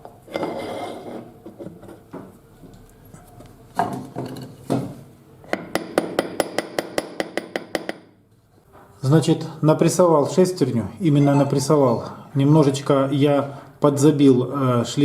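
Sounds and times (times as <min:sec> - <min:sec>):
hammer tapping on steel shaft: 0:05.5 - 0:08.1.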